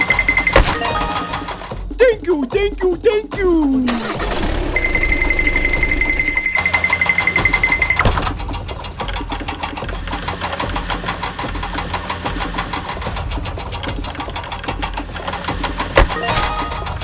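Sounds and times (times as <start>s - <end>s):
small machine clattering: 3.9s - 17.0s.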